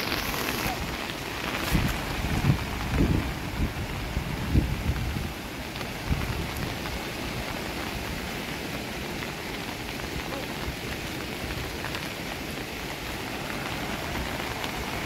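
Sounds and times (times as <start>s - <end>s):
water hissing: 0.0s - 2.4s.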